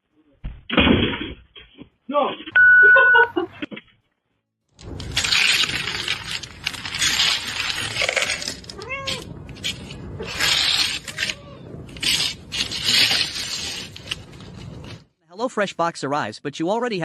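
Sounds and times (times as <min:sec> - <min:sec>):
cat yowling: 0:08.8 - 0:09.3, 0:10.2 - 0:11.8
cat hissing: 0:10.2 - 0:13.2.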